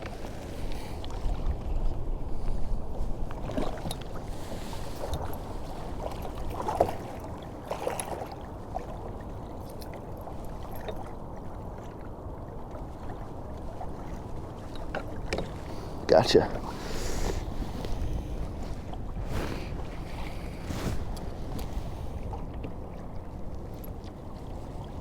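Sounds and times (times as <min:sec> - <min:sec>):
low wind: 0:00.0 - 0:25.0
water noise: 0:00.0 - 0:25.0.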